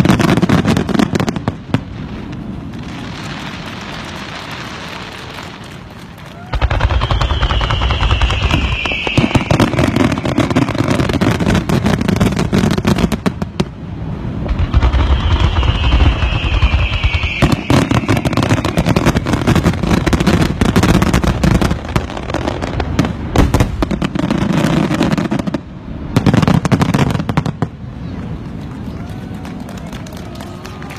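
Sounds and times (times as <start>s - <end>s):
fireworks crackling pops: 0.0s - 30.9s
falling firework whistle: 2.9s - 11.5s, 14.5s - 21.6s.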